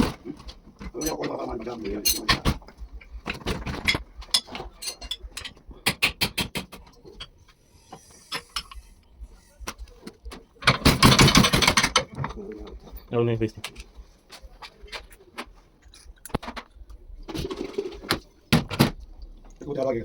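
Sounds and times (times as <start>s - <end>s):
metal parts clicking and knocking: 0.0s - 7.4s, 9.6s - 19.5s
loud rapid rattle: 10.7s - 12.0s.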